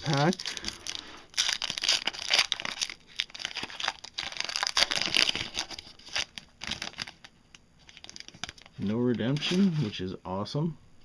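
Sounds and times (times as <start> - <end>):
wrapper tearing and crinkling: 0.0 - 9.8.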